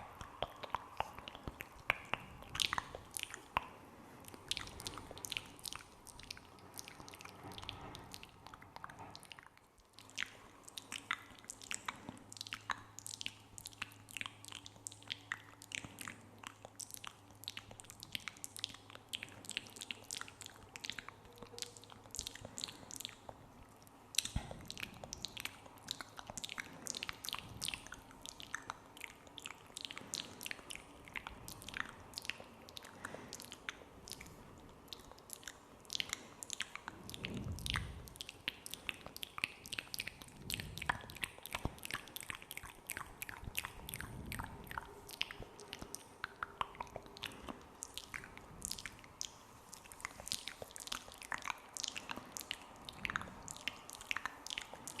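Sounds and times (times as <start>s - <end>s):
wet mouth clicks and smacks: 0.0s - 55.0s.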